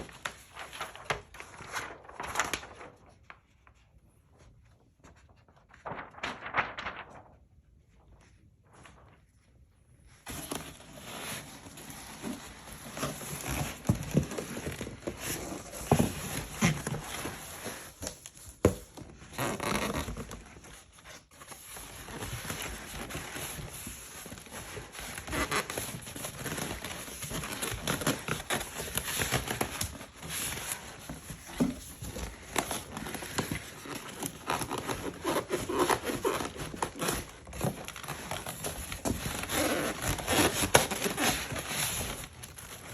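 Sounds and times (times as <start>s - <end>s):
packing material crinkling: 0.0s - 3.4s, 5.5s - 9.1s, 21.6s - 42.9s.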